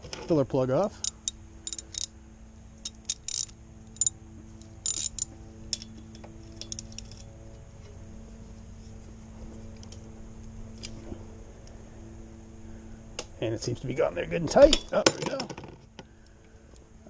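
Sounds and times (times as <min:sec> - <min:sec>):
steady low hum: 0:00.0 - 0:17.0
wrench clicking on metal: 0:01.0 - 0:02.1, 0:02.8 - 0:04.1, 0:04.9 - 0:05.9.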